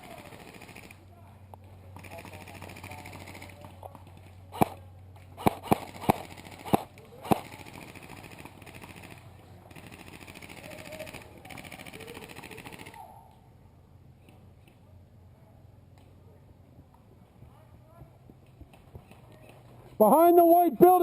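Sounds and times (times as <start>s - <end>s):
airsoft rifle shots: 4.5s - 4.8s, 5.4s - 13.1s.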